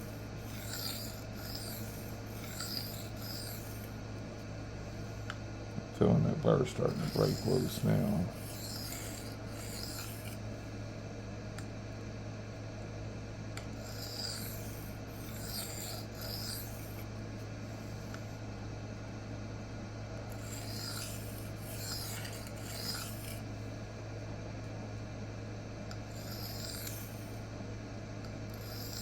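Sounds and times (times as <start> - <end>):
knife scraping on sharpening plate: 0.5 - 3.8, 6.8 - 10.4, 13.9 - 16.9, 20.4 - 23.4, 26.2 - 27.2.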